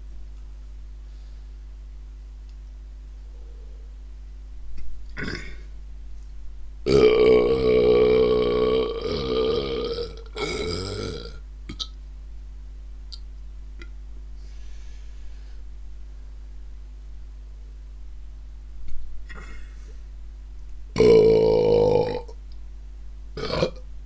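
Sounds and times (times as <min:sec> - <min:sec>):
person belching: 0:05.2 - 0:05.7, 0:06.9 - 0:12.0, 0:19.3 - 0:19.6, 0:21.0 - 0:22.4, 0:23.4 - 0:23.8.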